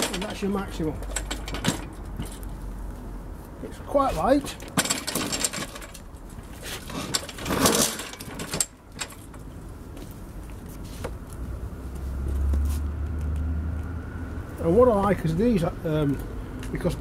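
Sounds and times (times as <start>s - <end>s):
lawnmower parts clattering: 0.0s - 2.5s, 4.0s - 9.6s.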